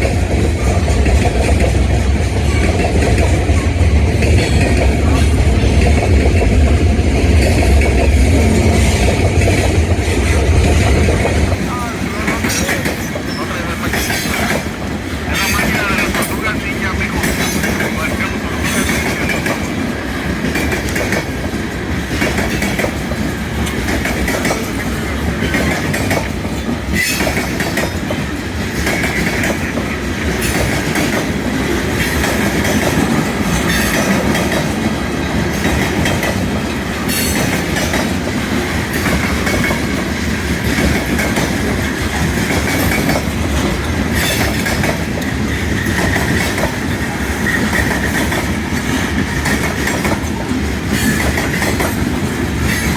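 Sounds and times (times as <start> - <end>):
wheels clattering over rail joints: 0.0 - 16.5, 17.2 - 52.9
train wheel squeal: 33.5 - 34.2.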